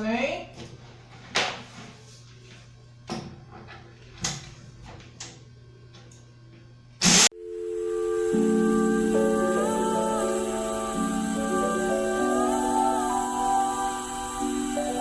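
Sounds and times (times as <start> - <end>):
steady low hum: 5.5 - 15.0
loud burst of noise: 7.0 - 7.3.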